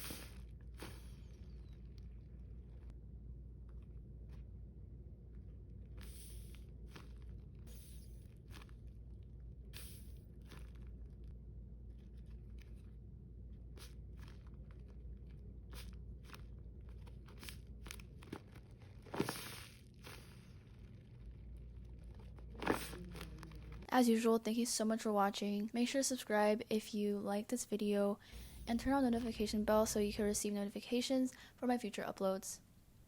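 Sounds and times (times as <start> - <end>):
taped paper crinkling: 10.3 - 23.9.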